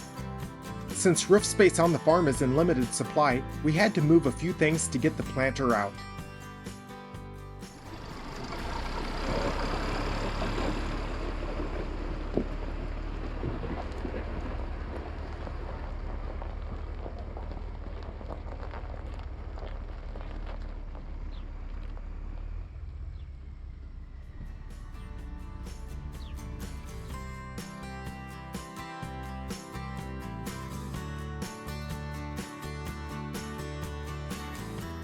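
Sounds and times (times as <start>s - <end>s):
farm machine engine running: 7.6s - 35.0s.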